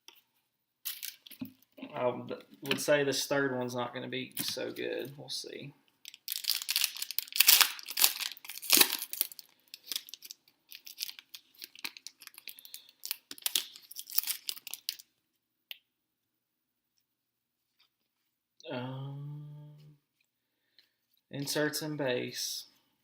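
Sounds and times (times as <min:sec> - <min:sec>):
wrapper tearing and crinkling: 0:00.9 - 0:01.3, 0:06.0 - 0:15.1.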